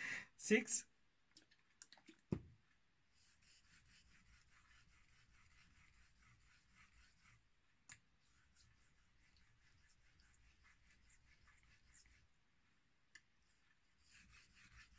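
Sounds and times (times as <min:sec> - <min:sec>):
dull thump: 0:02.3 - 0:02.5
razor blade scraping on whetstone: 0:14.0 - 0:14.9.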